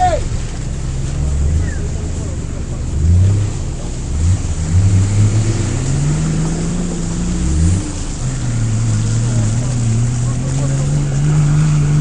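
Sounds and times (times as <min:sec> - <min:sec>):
off-road vehicle engine revving: 0:00.0 - 0:12.0.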